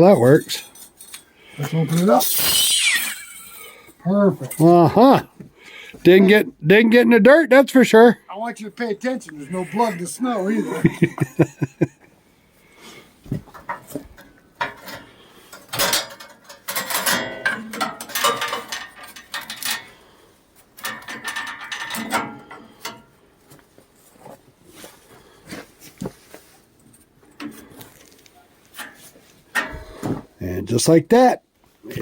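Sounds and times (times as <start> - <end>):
metallic clanking and ratcheting: 14.6 - 20.0, 20.8 - 23.1, 29.6 - 30.0.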